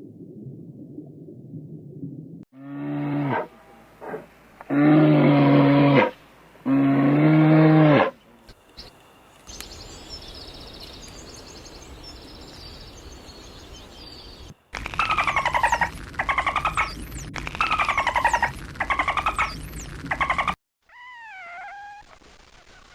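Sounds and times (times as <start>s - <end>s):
harsh rasping animal calls: 14.9s - 22.0s.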